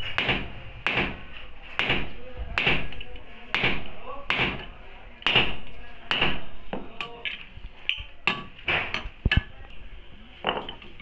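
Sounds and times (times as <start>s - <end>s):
hammer striking metal: 0.0s - 6.4s, 8.2s - 9.1s.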